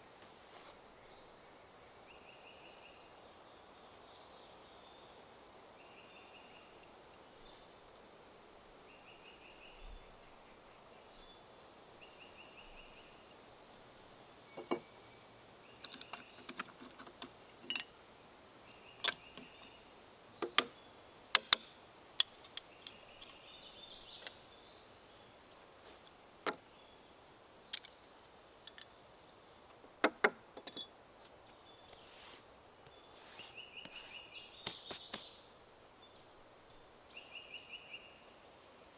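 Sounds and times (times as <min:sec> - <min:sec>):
hand tools clicking and knocking: 0:27.7 - 0:28.9, 0:30.0 - 0:30.9.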